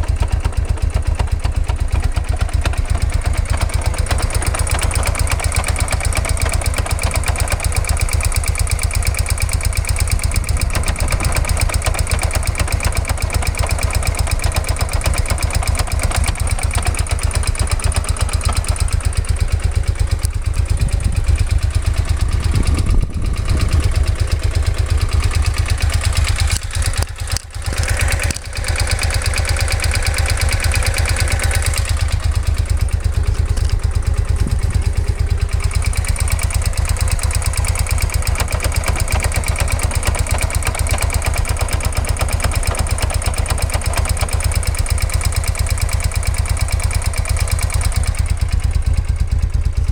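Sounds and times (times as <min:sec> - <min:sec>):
motorcycle shaft drive clattering: 0:25.9 - 0:42.9.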